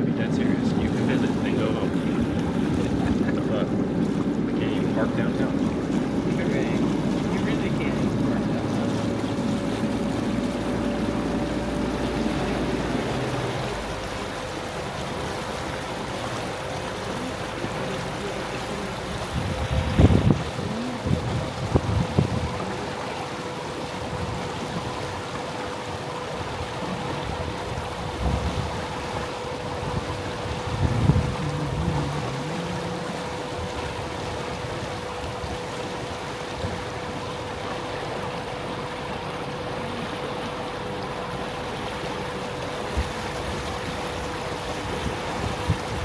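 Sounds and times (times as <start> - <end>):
boat motor humming: 0.0 - 46.0
water wash: 0.0 - 46.0
wind noise: 19.3 - 22.8, 27.3 - 28.9, 29.8 - 32.9.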